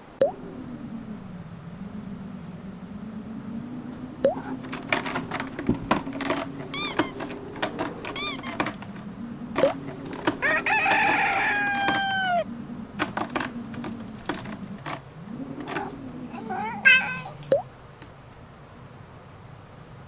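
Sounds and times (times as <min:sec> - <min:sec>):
steady low hum: 0:00.0 - 0:18.7
rooster crowing: 0:04.4 - 0:17.5.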